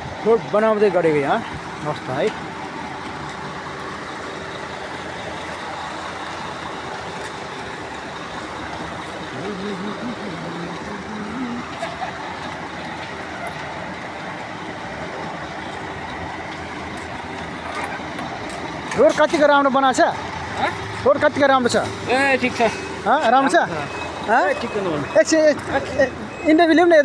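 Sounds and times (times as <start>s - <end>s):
heavy engine rumbling: 0.0s - 27.0s
faint voices: 8.8s - 14.4s.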